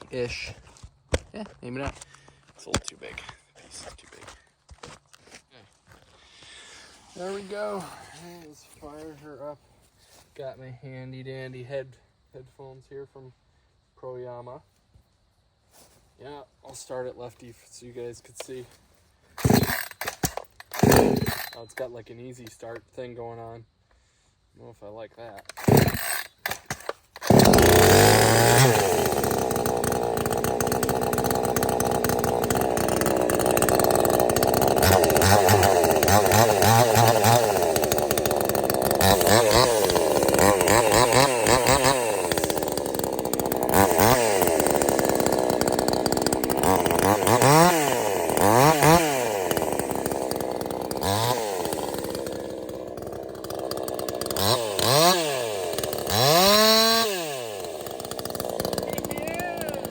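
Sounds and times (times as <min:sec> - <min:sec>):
chainsaw revving and idling: 0:06.8 - 0:08.5, 0:19.4 - 0:22.6, 0:25.4 - 0:59.9.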